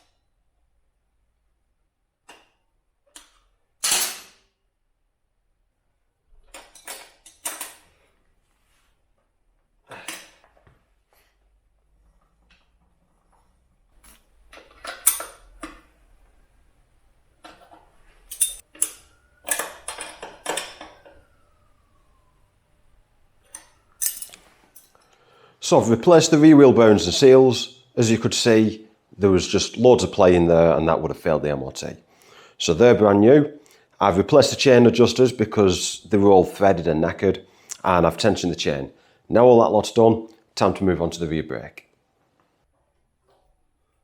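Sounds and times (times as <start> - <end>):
metal tools knocking and clattering: 14.0 - 15.8, 18.3 - 21.1, 23.5 - 25.0
faint metallic ringing tone: 18.2 - 25.1.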